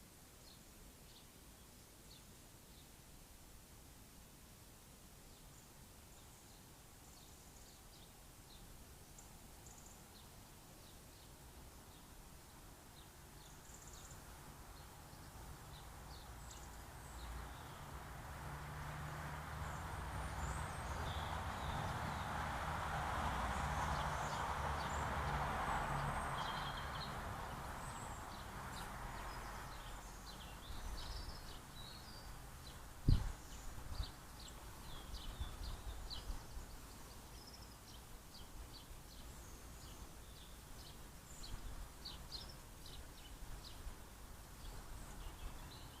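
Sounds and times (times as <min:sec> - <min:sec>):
small birds chirping: 0:05.2 - 0:46.0.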